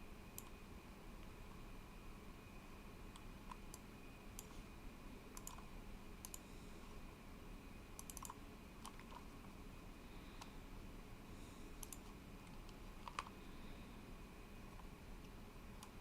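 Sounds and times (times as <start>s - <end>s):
low steady hiss: 0.0s - 16.0s
computer control clicks: 5.4s - 6.4s, 8.0s - 9.2s, 11.8s - 13.3s.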